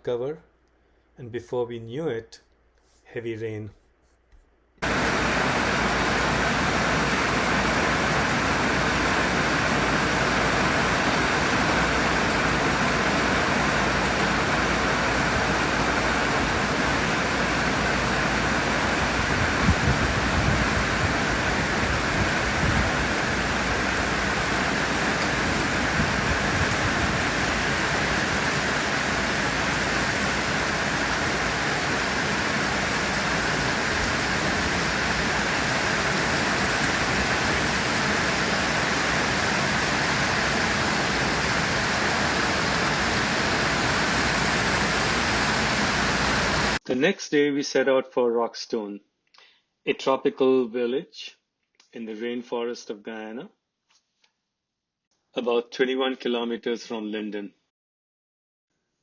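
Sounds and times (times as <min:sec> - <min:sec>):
heavy rain pouring: 0:04.8 - 0:46.8.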